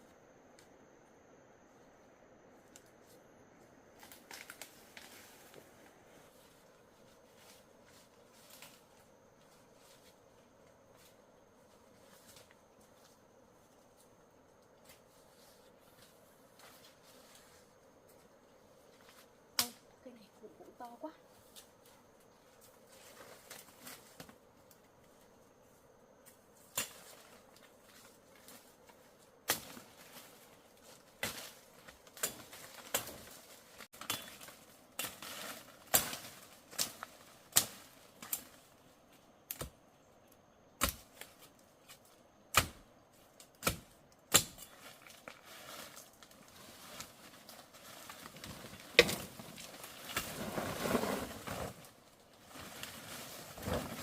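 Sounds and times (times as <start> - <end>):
soil and plants rustling: 0.0 - 54.0
digging tool chopping earth: 42.5 - 42.8, 43.6 - 44.7.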